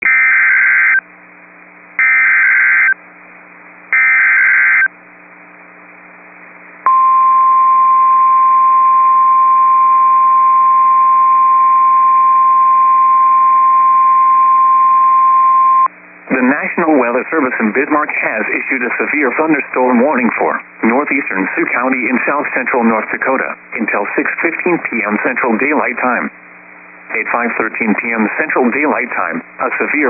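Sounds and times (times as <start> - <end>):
radio static: 3.9 - 4.9, 15.6 - 30.0
screeching data bursts: 4.0 - 4.9.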